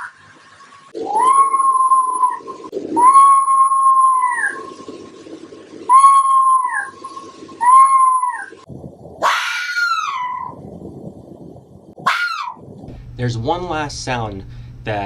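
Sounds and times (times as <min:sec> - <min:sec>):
fox calling: 0:01.0 - 0:04.6, 0:05.8 - 0:10.6, 0:12.0 - 0:12.7.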